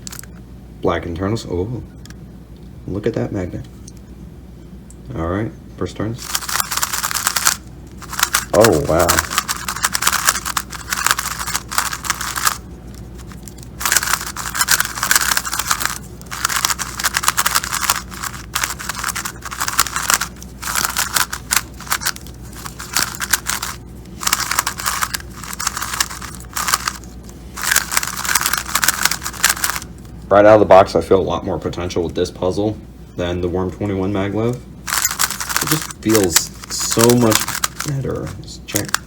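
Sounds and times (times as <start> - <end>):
plastic puzzle cube clicking: 6.2 - 12.6, 13.3 - 27.0, 27.6 - 29.9, 34.9 - 37.9.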